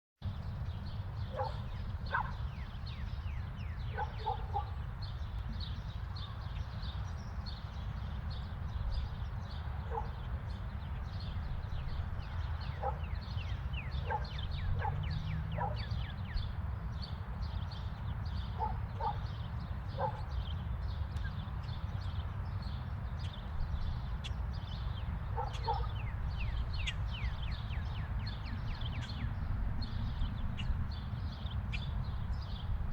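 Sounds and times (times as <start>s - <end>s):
small birds chirping: 0.3s - 32.8s
dog barking: 1.3s - 2.4s, 3.9s - 4.8s, 9.9s - 10.2s, 12.7s - 13.2s, 14.0s - 15.9s, 18.6s - 19.3s, 19.9s - 20.3s, 25.3s - 26.0s.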